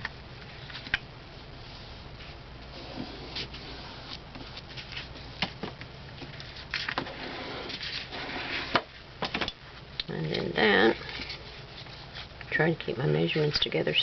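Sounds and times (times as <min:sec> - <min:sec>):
low hum: 0:00.0 - 0:13.4
paper rustling: 0:03.0 - 0:07.0.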